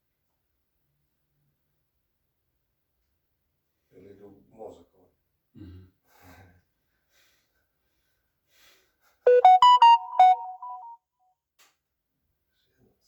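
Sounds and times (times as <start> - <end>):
electronic piano-like notes: 9.3 - 11.0.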